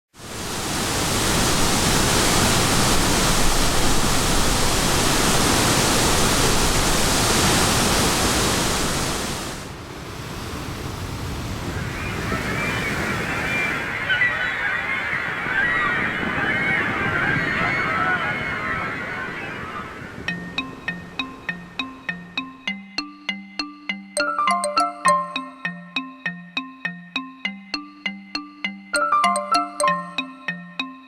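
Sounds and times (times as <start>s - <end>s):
waterfall rushing: 0.2s - 21.8s.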